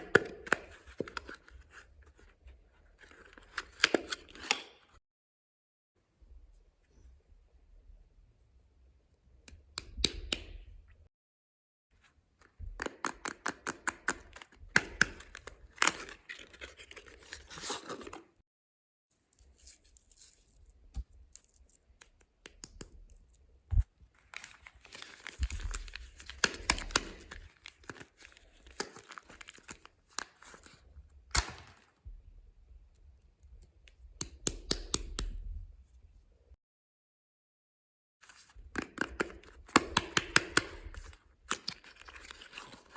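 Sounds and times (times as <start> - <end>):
wrappers crinkling and tearing: 24.2 - 30.8.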